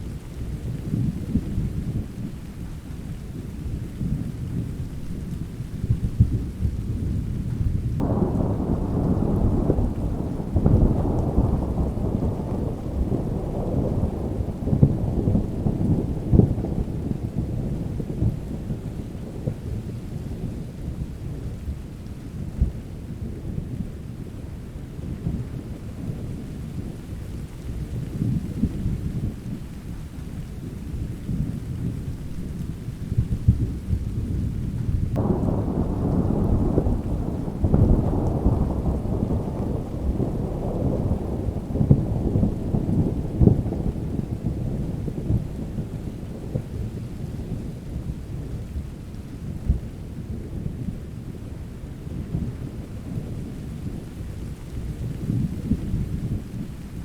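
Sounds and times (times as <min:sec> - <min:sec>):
rain: 0:00.0 - 0:57.0
rolling thunder: 0:00.0 - 0:57.0.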